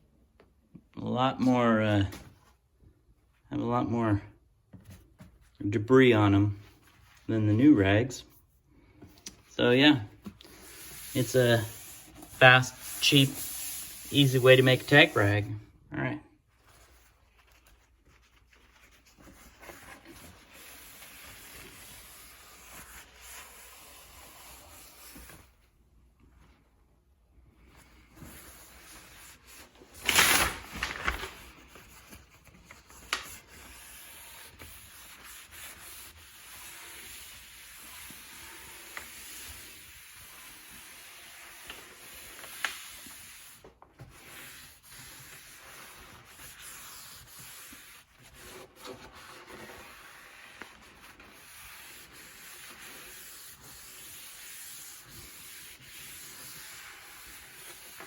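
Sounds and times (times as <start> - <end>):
hand rubbing on wood: 9.6 - 15.5, 44.2 - 58.0.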